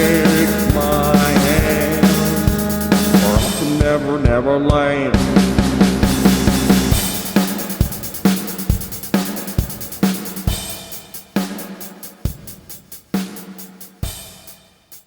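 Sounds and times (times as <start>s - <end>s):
rock band playing: 0.0s - 4.1s, 5.2s - 10.7s
drum kit steady beat: 0.0s - 15.0s.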